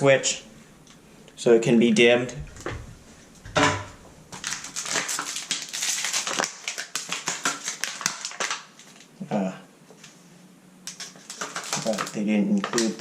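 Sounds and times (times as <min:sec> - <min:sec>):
packaging clicking and crinkling: 0:04.3 - 0:09.1, 0:10.8 - 0:13.0.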